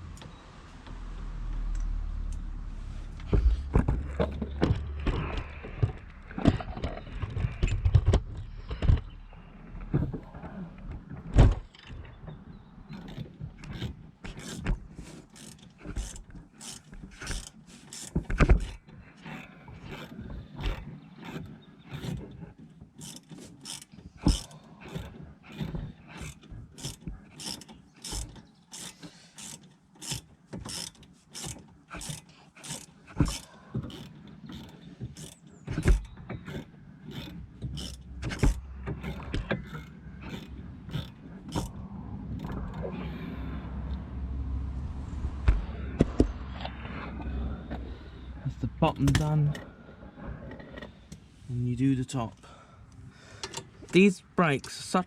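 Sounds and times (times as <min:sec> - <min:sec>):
ratchet wrench clicking: 0:15.3 - 0:18.1, 0:23.0 - 0:25.6, 0:26.2 - 0:41.8.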